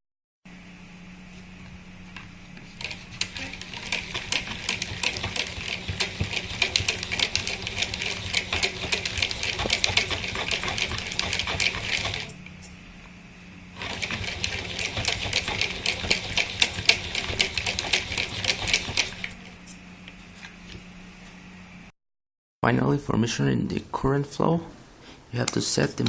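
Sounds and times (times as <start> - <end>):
hand-cranked generator clicking: 2.8 - 12.4, 13.8 - 19.4.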